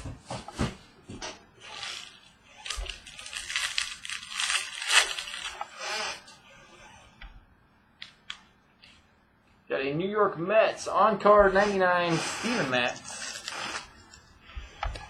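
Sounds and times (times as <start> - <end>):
wrapper tearing and crinkling: 1.6 - 5.8, 12.9 - 14.3.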